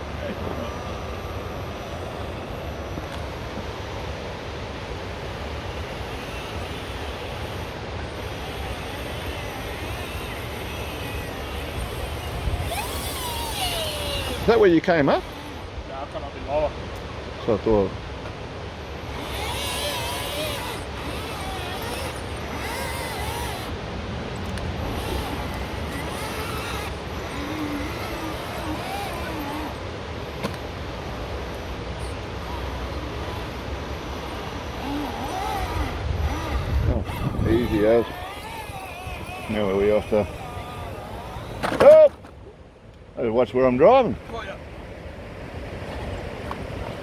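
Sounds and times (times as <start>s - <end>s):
electric motor whining: 0.0s - 42.3s.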